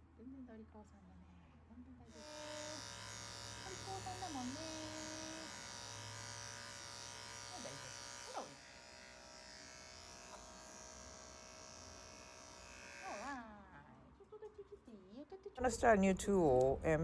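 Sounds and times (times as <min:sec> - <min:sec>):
electric clippers buzzing: 0:02.1 - 0:13.5.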